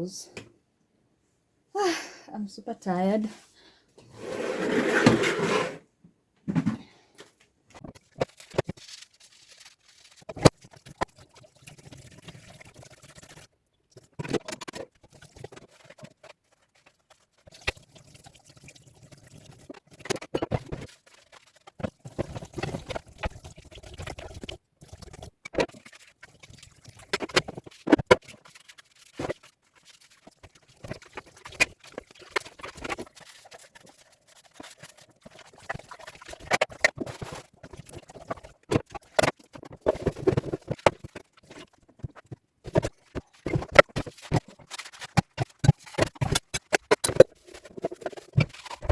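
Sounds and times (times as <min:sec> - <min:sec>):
plastic parts knocking and clattering: 0:06.4 - 0:09.0, 0:14.1 - 0:16.1, 0:21.8 - 0:24.4, 0:35.5 - 0:48.9
water splashing and trickling: 0:07.8 - 0:48.9.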